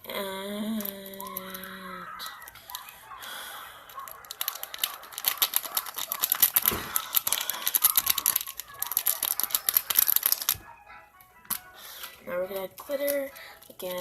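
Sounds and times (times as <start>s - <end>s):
plastic packaging crinkling: 0.7s - 10.6s.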